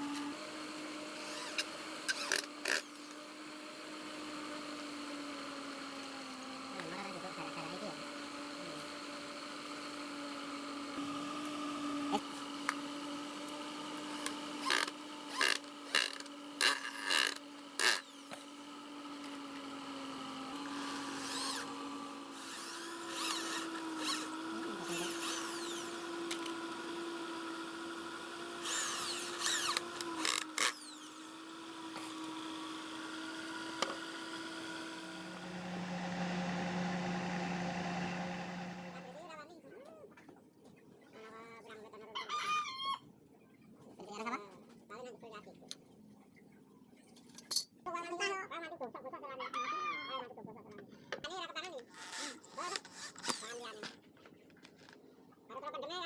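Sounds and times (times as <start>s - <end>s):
power tool motor running: 0.0s - 39.2s
low hum: 34.4s - 39.2s.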